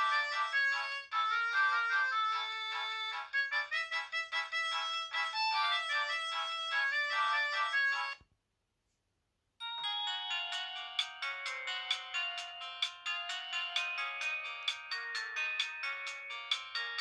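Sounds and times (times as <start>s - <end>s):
ringtone with chords and beat: 0.0s - 8.2s, 9.6s - 17.0s
quick melodic ringtone: 9.6s - 17.0s.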